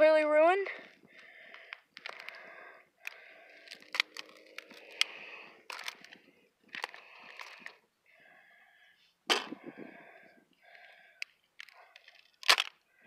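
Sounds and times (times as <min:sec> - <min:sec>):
broken plastic and glass clicking: 0:11.2 - 0:12.8.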